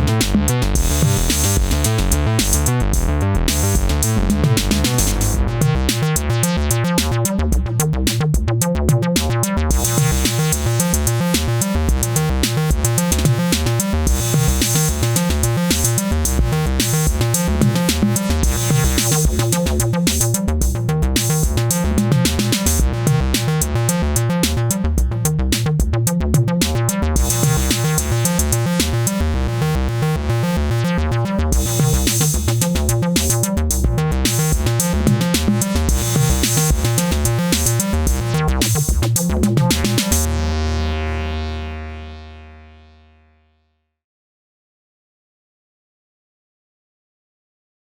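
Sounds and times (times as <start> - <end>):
drum machine beat: 0.0 - 29.2, 31.6 - 40.3
synthesizer bass line: 0.0 - 43.7.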